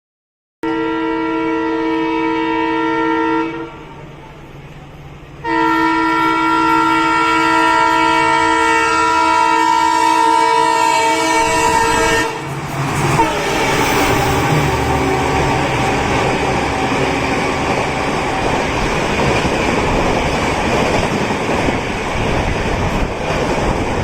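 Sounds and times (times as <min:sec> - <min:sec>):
locomotive horn blasts: 0:00.6 - 0:04.1, 0:05.4 - 0:18.4
train passing at speed: 0:00.7 - 0:24.0.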